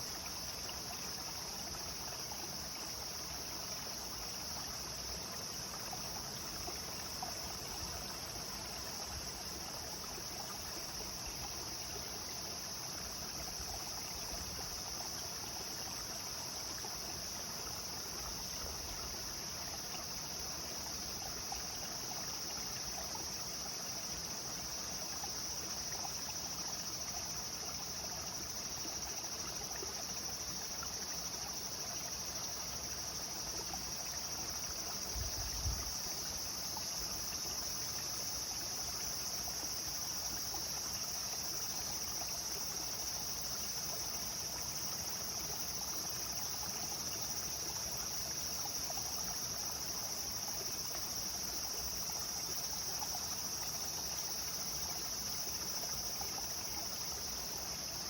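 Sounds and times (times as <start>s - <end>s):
high-pitched insect chorus: 0.0s - 58.0s.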